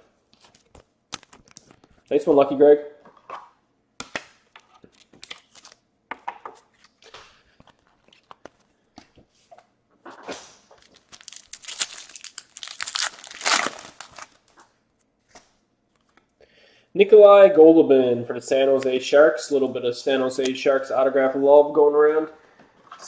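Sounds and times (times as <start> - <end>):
wrapper crinkling and tearing: 4.8 - 5.8, 10.8 - 14.6.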